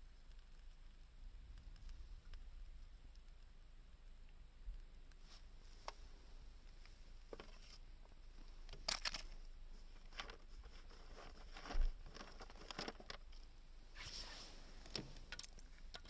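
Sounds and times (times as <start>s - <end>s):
small objects clicking and rustling: 8.6s - 13.6s, 14.8s - 16.0s.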